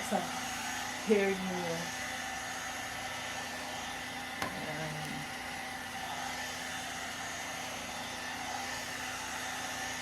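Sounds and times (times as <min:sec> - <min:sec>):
hair dryer brush whining: 0:00.0 - 0:10.0.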